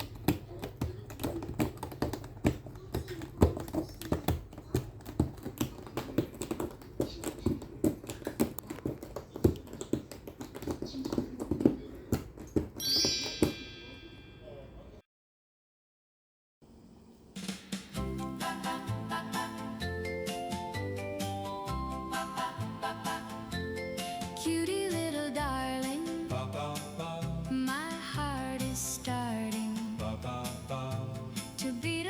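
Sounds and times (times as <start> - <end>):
claws scratching cardboard: 0.0 - 12.8
bright chime-like tone: 12.8 - 14.8.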